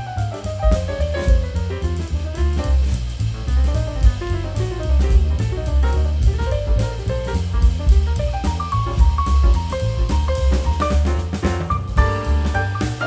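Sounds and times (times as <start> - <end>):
drum kit: 0.0 - 13.0
jazz music: 0.0 - 13.0
walking bass: 0.0 - 13.0.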